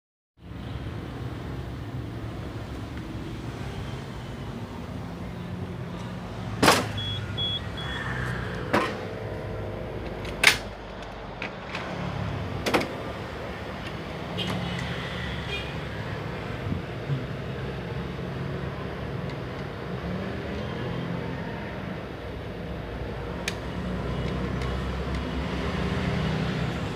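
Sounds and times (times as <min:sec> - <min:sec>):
short faint beeps: 0:07.0 - 0:08.0.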